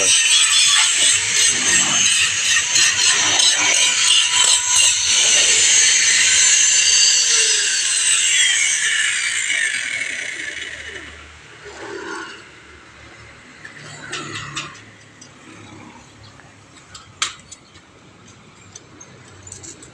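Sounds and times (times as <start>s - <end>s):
power tool running and winding down: 0.0s - 11.4s.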